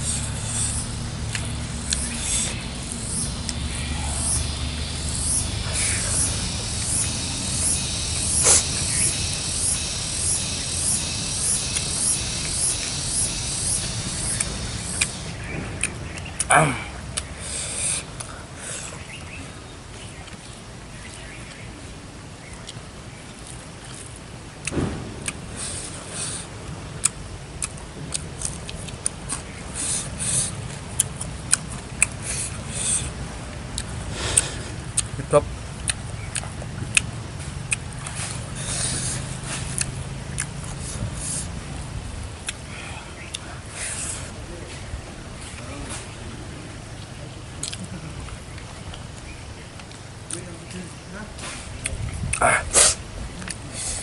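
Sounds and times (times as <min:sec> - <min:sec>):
close chewing: 0:00.0 - 0:21.7, 0:27.0 - 0:46.1, 0:47.0 - 0:54.0
low thud: 0:15.4 - 0:16.1, 0:24.7 - 0:26.9.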